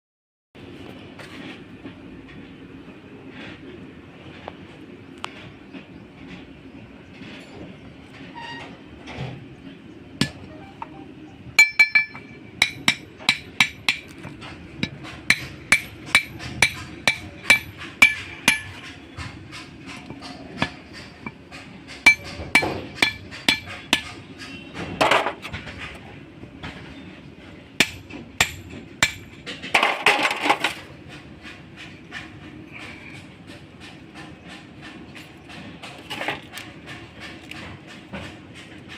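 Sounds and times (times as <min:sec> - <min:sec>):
hammer striking steel: 0:10.2 - 0:25.4, 0:27.8 - 0:30.4.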